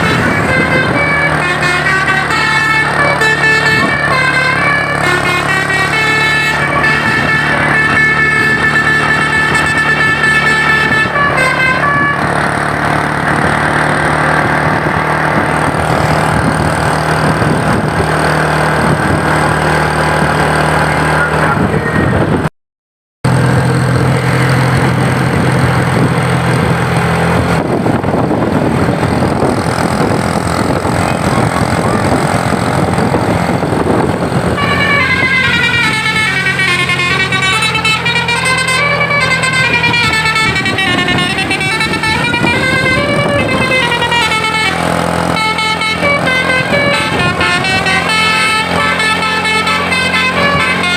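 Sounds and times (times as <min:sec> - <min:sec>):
musical bus horn tune: 0:00.0 - 0:13.2, 0:33.3 - 0:50.9
bus driving road noise: 0:00.0 - 0:22.5, 0:23.3 - 0:50.9.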